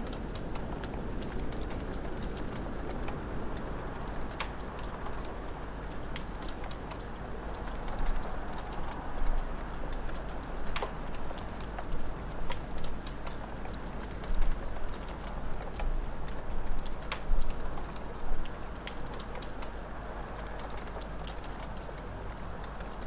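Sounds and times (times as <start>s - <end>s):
wood fire crackling: 9.8s - 23.0s.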